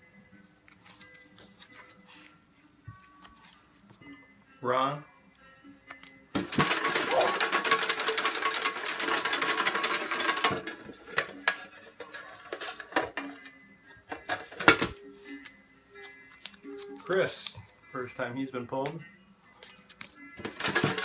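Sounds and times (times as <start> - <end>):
paper crinkling: 0.5 - 4.0
paper slips rattling in container: 6.4 - 13.3, 20.4 - 21.0.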